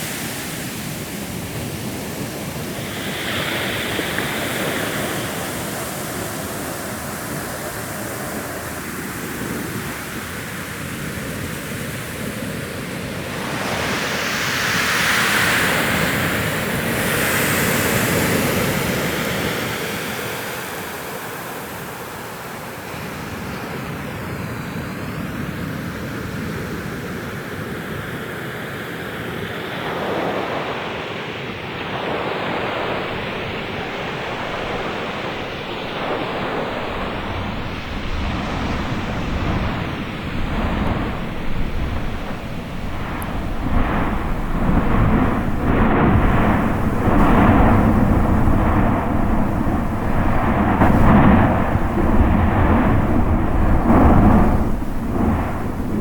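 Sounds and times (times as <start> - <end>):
rushing noise roar: 32.0 - 56.0
pulsing surges with deep rumble: 33.4 - 56.0.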